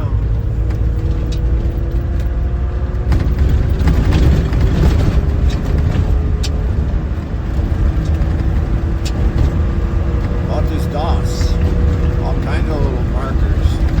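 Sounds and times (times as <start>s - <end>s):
car engine drone: 0.0s - 14.0s
knocks and rattles from rough ground: 3.0s - 10.5s.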